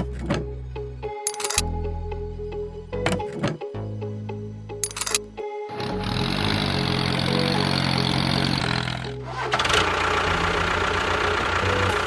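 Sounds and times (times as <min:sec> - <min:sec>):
tractor engine running: 0:01.3 - 0:01.6, 0:04.8 - 0:12.0.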